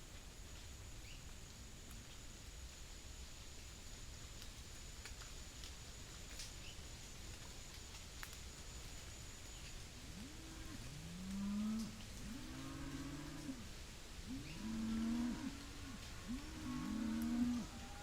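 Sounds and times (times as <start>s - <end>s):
faint chirps of birds or insects: 0.0s - 18.0s
cattle mooing: 14.6s - 18.0s.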